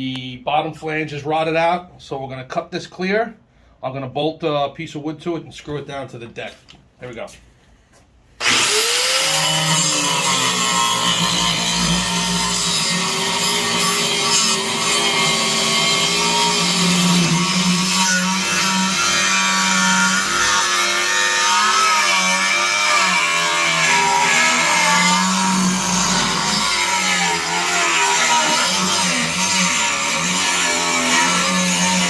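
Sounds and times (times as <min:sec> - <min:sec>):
angle grinder cutting metal: 0:08.4 - 0:32.0.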